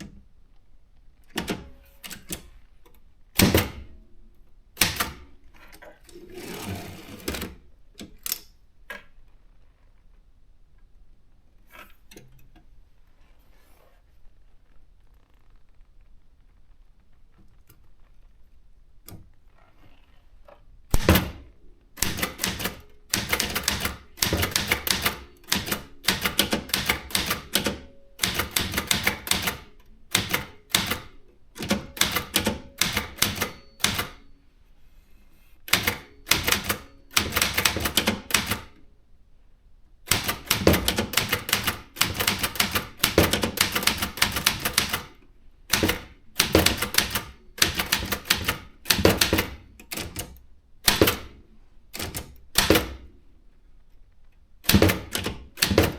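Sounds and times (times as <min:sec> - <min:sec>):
typewriter keystrokes: 0:01.3 - 0:02.6, 0:03.4 - 0:04.0, 0:04.8 - 0:05.4, 0:20.9 - 0:34.2, 0:35.7 - 0:38.8, 0:40.1 - 0:51.4, 0:52.0 - 0:53.1, 0:54.6 - 0:55.9.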